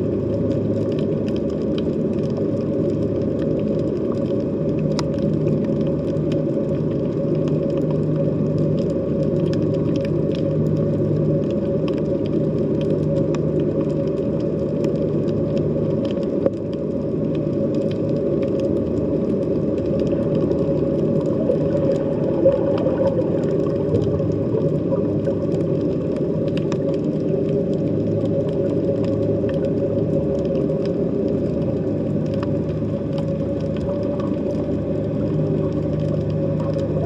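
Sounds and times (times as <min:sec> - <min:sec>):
underwater low drone: 0:00.0 - 0:37.0
underwater clicks: 0:07.4 - 0:37.0.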